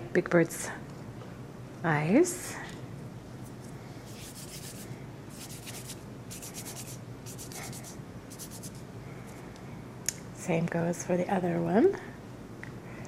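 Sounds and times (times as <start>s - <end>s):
faint low hum: 0.0s - 13.0s
fingers rubbing fondant: 4.1s - 8.8s.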